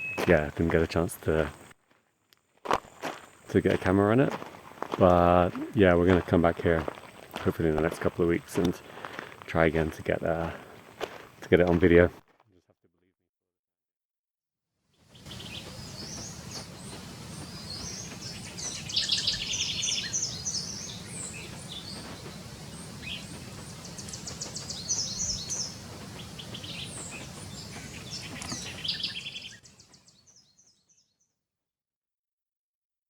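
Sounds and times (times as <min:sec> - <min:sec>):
birds chirping and trilling: 0:15.1 - 0:31.2.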